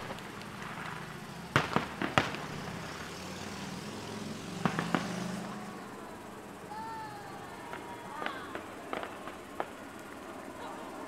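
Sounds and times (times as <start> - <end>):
distant fireworks bursting: 0.0 - 11.0.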